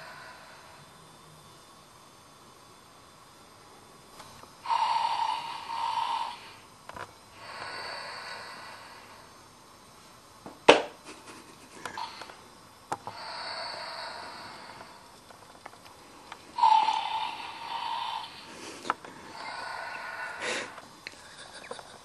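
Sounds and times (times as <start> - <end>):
toy snoring: 4.6 - 6.6, 13.1 - 15.0, 16.6 - 18.5, 19.3 - 20.8
hissing breath out: 7.4 - 9.3, 16.6 - 20.8.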